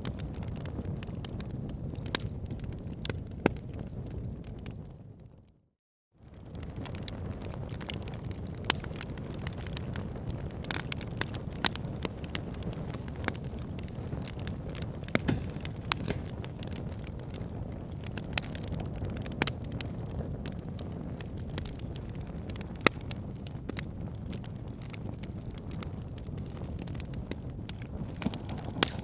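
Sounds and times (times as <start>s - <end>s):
fire crackling and popping: 0.0s - 5.5s, 6.2s - 29.0s
fire low rush: 27.7s - 29.0s.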